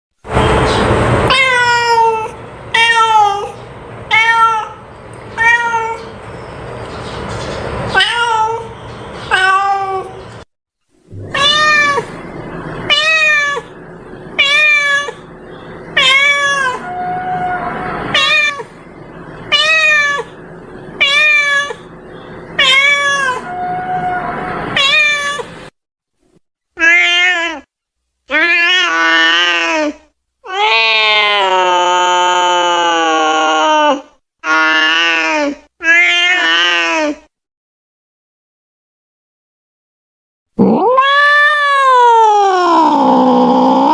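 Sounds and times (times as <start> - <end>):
cat meowing: 1.3 - 4.8, 5.4 - 6.1, 7.9 - 8.7, 11.2 - 12.2, 12.8 - 13.8, 14.4 - 15.3, 16.0 - 18.7, 19.5 - 20.4, 21.0 - 21.9, 22.6 - 25.6, 30.5 - 32.9, 33.5 - 37.2, 40.6 - 43.9.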